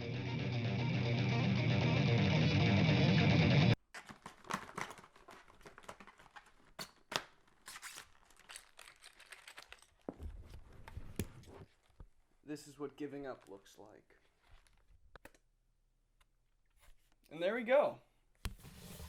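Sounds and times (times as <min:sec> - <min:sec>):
music: 0:00.0 - 0:03.8
crinkling and crackling foley: 0:03.8 - 0:15.3.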